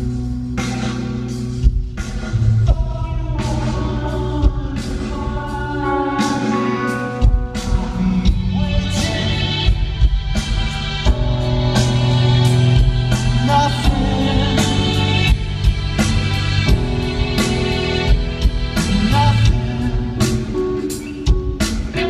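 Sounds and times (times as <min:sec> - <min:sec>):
rock band playing: 0:00.0 - 0:22.0
person singing: 0:02.6 - 0:10.2, 0:11.5 - 0:15.6, 0:18.7 - 0:22.0.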